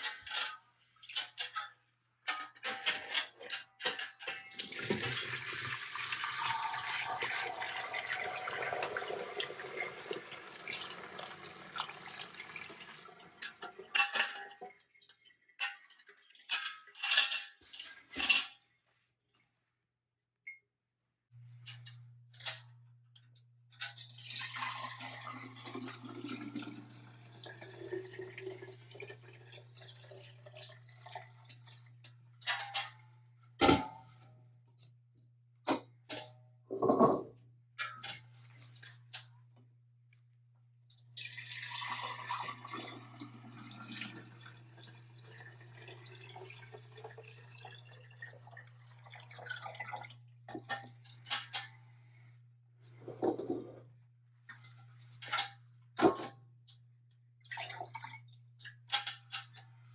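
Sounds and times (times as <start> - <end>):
running water: 4.5 - 16.7, 23.9 - 32.2, 41.2 - 51.3.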